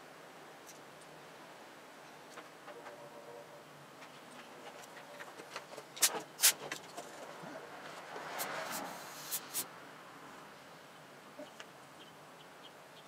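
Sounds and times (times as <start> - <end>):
short hiss: 6.0 - 6.7, 8.3 - 9.7.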